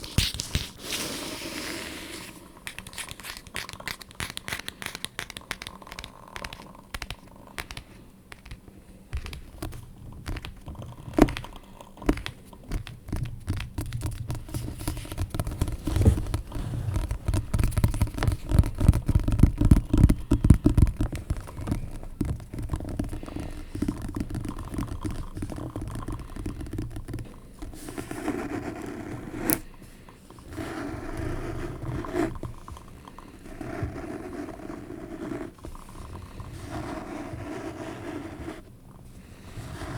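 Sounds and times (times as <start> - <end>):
dense scratching: 0.0 - 7.4, 14.4 - 29.7, 30.3 - 38.7
smooth rubbing strokes: 0.8 - 3.4
tapping on objects: 9.2 - 27.8.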